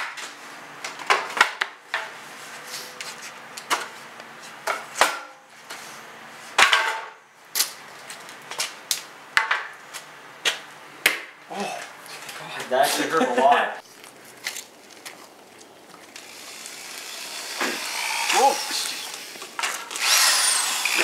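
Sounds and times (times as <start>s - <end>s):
wooden boards and tools clattering: 0.0s - 2.2s, 3.6s - 5.4s, 6.5s - 8.8s, 9.4s - 9.7s, 16.5s - 20.1s.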